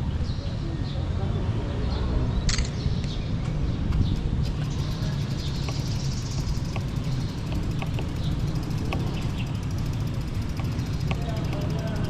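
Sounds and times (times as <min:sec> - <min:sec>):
bike tyre rumble: 0:04.1 - 0:12.0
light ticks: 0:05.6 - 0:12.0.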